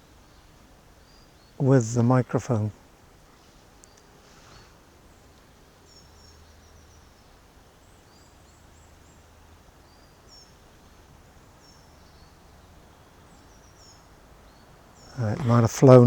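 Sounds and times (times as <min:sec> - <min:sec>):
songbirds chirping: 0:00.0 - 0:16.0
distant road traffic rumble: 0:01.4 - 0:16.0.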